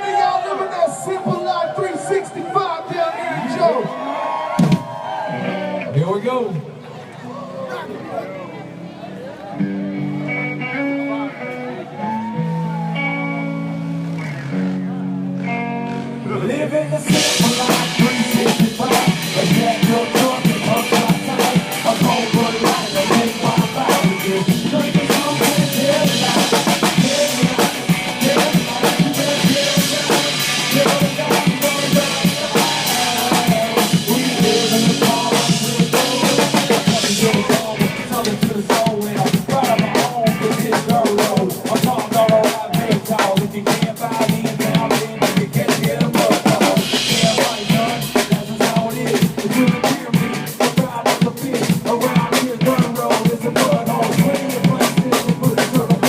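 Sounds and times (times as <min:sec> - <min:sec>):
country rap song played loud: 0:00.0 - 0:04.8, 0:15.4 - 0:56.0
drum kit beat: 0:04.6 - 0:05.1, 0:17.1 - 0:56.0.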